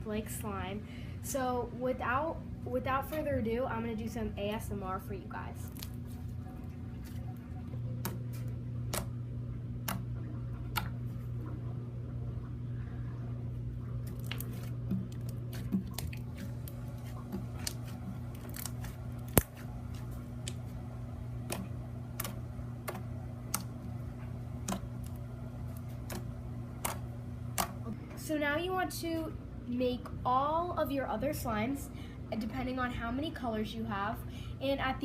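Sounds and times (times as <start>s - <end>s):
hands squishing slime: 5.7s - 7.4s, 14.0s - 20.8s.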